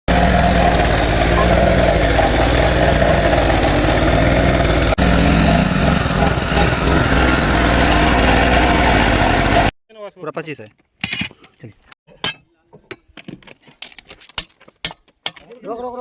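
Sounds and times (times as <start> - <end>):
engine running with low hum: 0.1 - 9.7.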